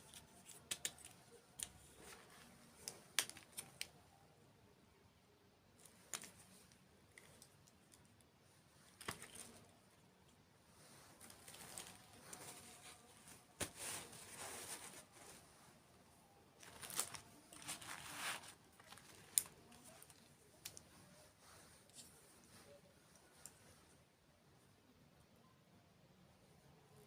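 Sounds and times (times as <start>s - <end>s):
food packaging crinkling: 11.2s - 14.1s, 16.6s - 20.8s.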